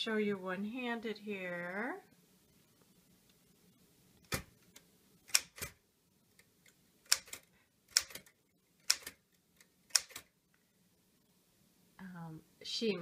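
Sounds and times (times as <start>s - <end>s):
manual typewriter clacks: 5.3s - 5.8s, 7.0s - 10.3s.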